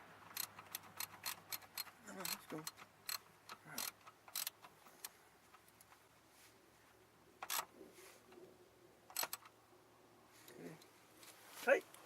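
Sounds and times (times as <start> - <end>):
tools clicking and knocking: 0.3 - 6.0.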